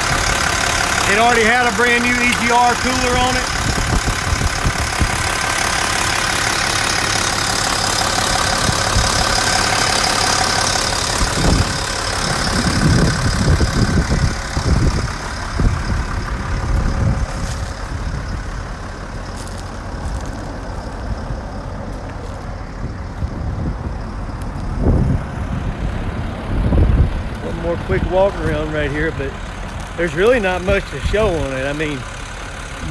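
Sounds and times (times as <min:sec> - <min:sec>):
cooling fan whirring: 0:00.0 - 0:32.9
diesel engine idling: 0:00.0 - 0:32.9
low thumps and rumbles: 0:00.0 - 0:32.9.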